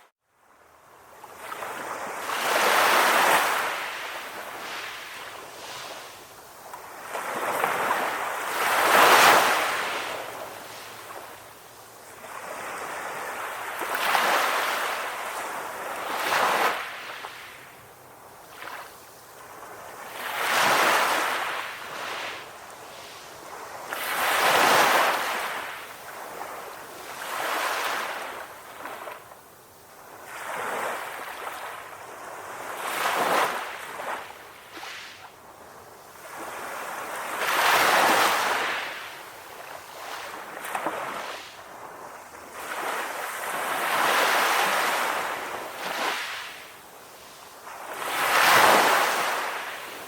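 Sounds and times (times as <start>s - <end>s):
sea waves breaking: 47.7s - 50.0s.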